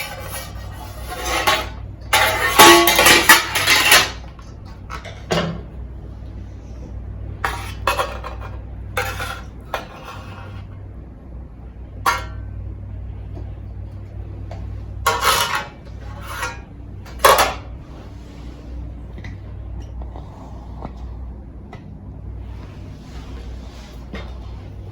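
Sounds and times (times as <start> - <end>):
metal mess tin clinking: 0.0 - 4.2, 12.1 - 12.4, 15.1 - 17.7
steady low hum: 0.0 - 24.9.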